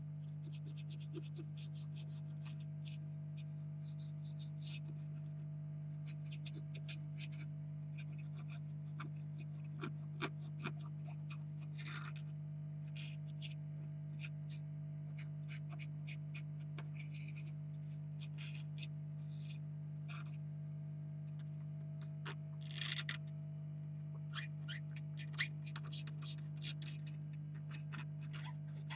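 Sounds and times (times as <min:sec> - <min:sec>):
steady low hum: 0:00.0 - 0:28.9
scratches and clicks of hand work: 0:21.3 - 0:23.4, 0:24.2 - 0:28.9.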